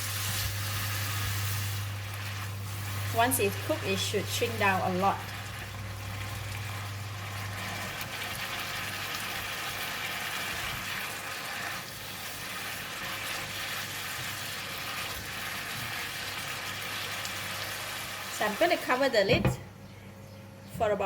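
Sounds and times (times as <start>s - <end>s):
food sizzling in a hot pan: 0.0s - 18.8s.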